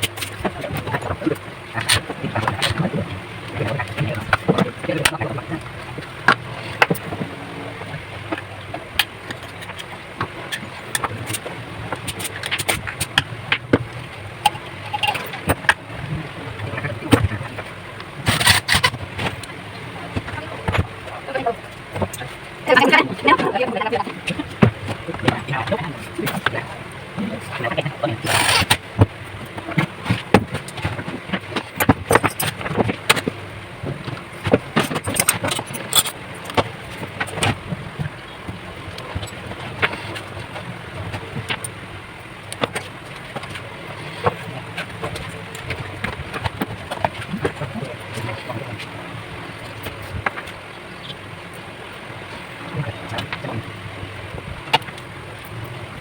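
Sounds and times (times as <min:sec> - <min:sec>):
steady low hum: 0:00.0 - 0:56.0
welding arc crackling and popping: 0:08.2 - 0:43.6.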